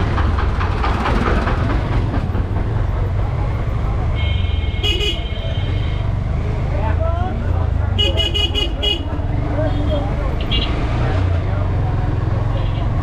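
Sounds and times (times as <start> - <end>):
street rumble: 0.0 - 13.0
vehicle horn honking: 4.2 - 6.1, 8.0 - 10.7.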